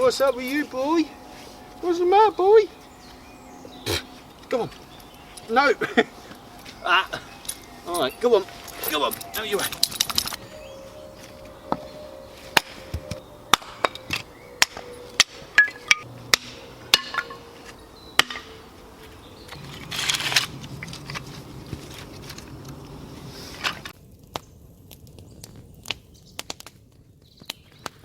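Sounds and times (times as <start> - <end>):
firewood knocking and cracking: 18.2 - 18.5, 23.7 - 28.0.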